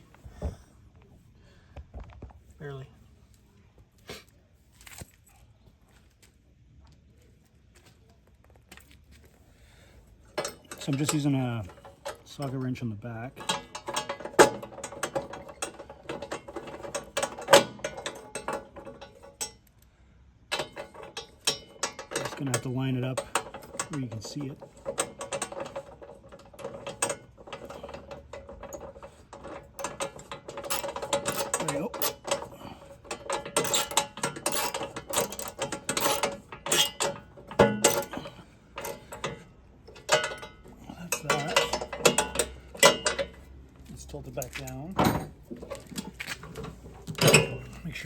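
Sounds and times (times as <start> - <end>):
ratcheting socket wrench clicking: 29.4 - 32.5, 33.1 - 39.4.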